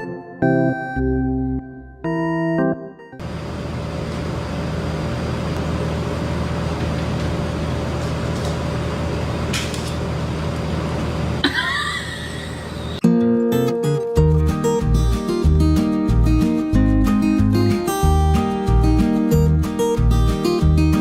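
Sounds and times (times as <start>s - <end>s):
music: 0.0s - 3.2s, 13.0s - 21.0s.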